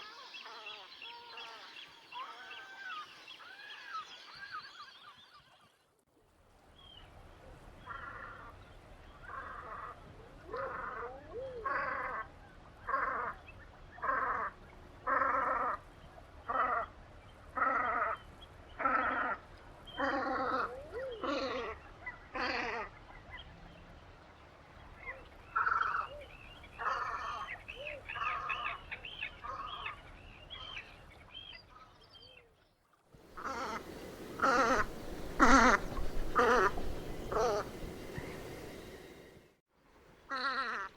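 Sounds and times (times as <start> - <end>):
ducks giving harsh calls: 33.3 - 38.8.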